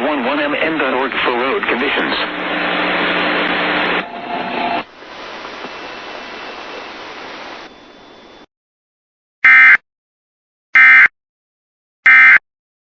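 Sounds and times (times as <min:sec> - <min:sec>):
radio static hiss: 0:00.0 - 0:08.5.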